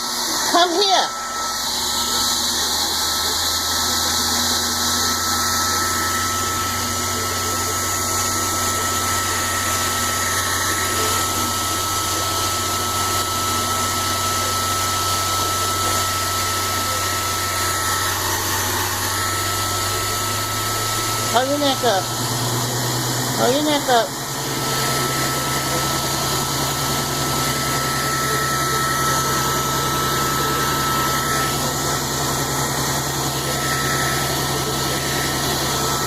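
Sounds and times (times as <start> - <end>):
blow dryer running: 0.0 - 36.0.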